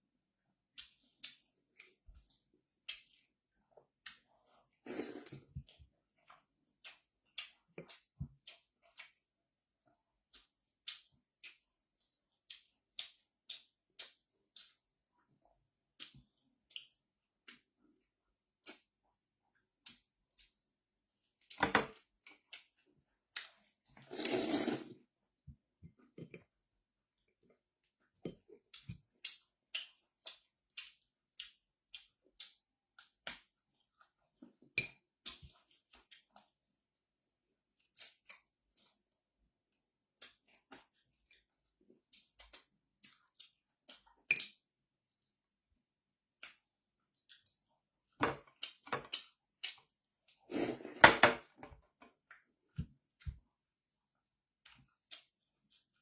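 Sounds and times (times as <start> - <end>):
mouth clicks and smacks chewing: 0.7 - 3.3, 4.0 - 9.2, 10.3 - 14.8, 22.3 - 23.7, 28.6 - 34.3, 46.4 - 47.7, 54.6 - 56.0.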